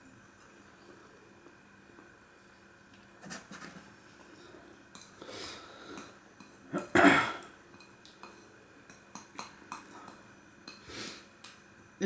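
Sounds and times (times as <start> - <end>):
person coughing: 6.7 - 7.4.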